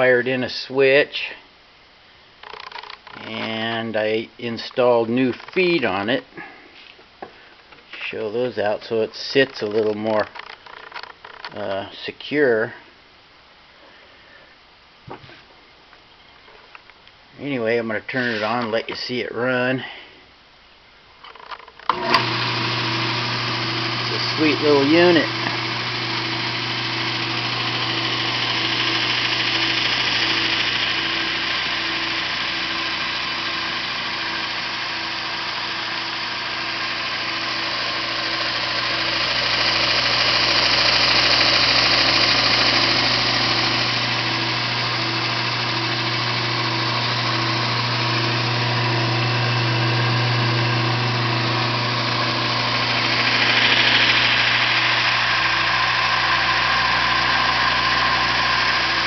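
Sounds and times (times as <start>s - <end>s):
belt sander running: 21.8s - 59.0s.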